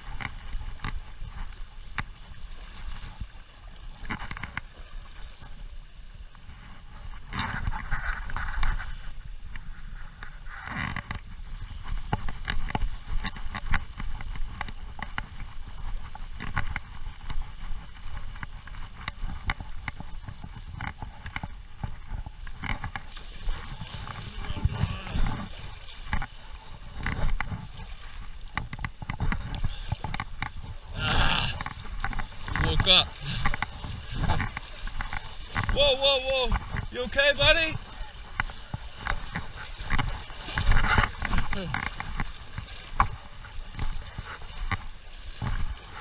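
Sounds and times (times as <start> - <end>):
river water rumbling: 0.0 - 46.0
wind on microphone: 6.4 - 46.0
faint high whine: 10.0 - 46.0.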